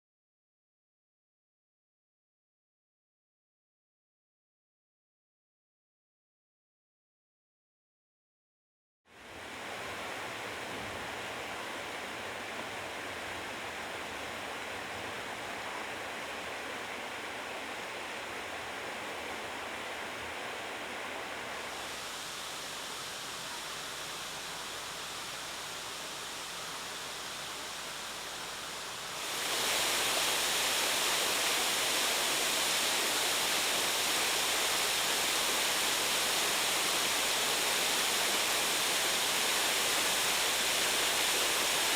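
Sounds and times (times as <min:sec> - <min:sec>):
waterfall rushing: 0:09.2 - 0:41.9.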